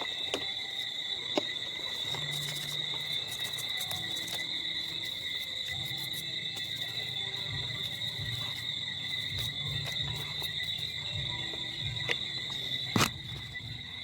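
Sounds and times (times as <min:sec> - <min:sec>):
insects trilling: 0:00.0 - 0:14.0.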